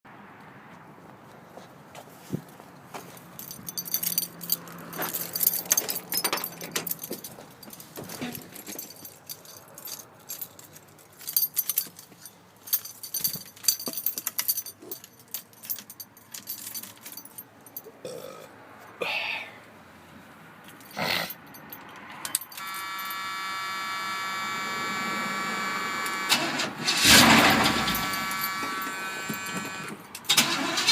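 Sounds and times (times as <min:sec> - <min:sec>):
metallic clicking and jingling: 0:03.1 - 0:18.0, 0:20.7 - 0:23.2, 0:27.0 - 0:30.8.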